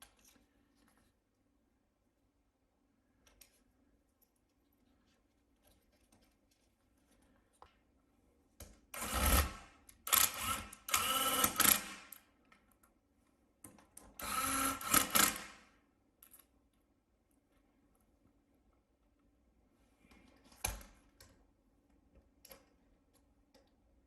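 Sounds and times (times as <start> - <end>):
electric screwdriver motor whirring: 9.0 - 12.0, 14.2 - 15.5.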